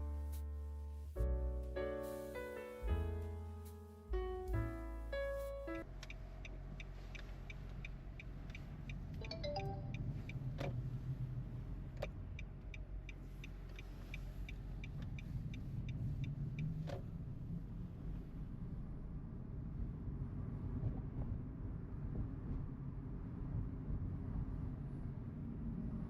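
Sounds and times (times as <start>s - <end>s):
car rolling with low rumble: 0.0s - 26.0s
light regular ticking: 2.9s - 10.8s, 11.9s - 17.0s.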